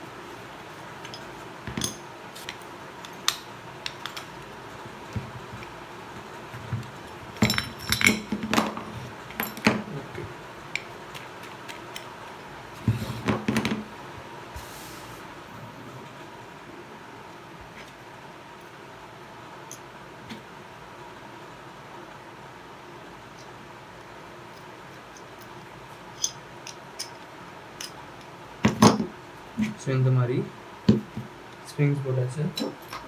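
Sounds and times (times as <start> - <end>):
metal brake parts clattering: 1.0 - 5.7, 7.3 - 10.8.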